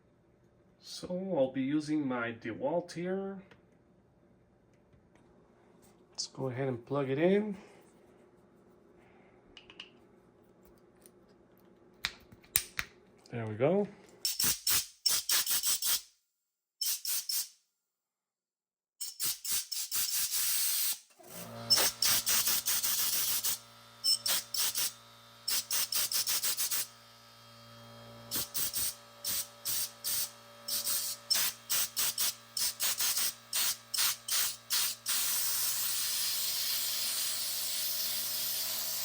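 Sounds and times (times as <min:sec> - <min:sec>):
air blow gun hissing blasts: 0:19.1 - 0:23.6, 0:24.2 - 0:26.9, 0:28.3 - 0:38.2
air compressor motor humming: 0:21.2 - 0:39.0.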